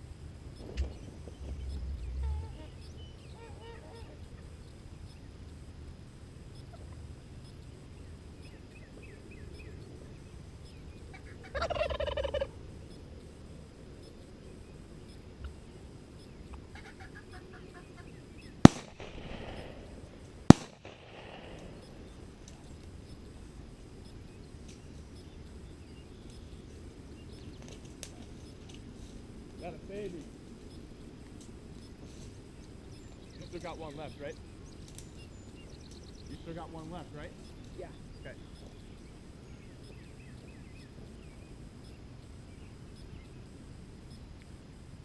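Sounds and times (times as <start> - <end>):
turkey gobbling: 0.6 - 4.5, 11.1 - 12.6, 16.5 - 18.2
soft turkey calls: 0.6 - 5.2, 6.6 - 7.1, 11.1 - 12.6, 15.4 - 19.9
echoing gunshots: 18.6 - 22.4.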